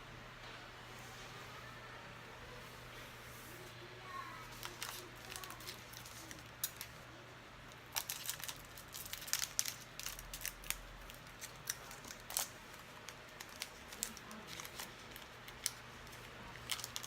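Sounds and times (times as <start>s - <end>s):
foil pack crinkling: 4.5s - 7.0s, 7.8s - 17.0s.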